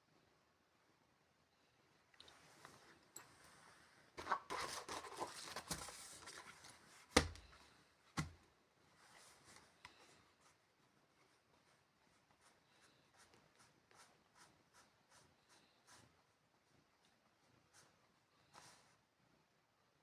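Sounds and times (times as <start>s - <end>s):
rustling and scraping: 2.4s - 14.9s.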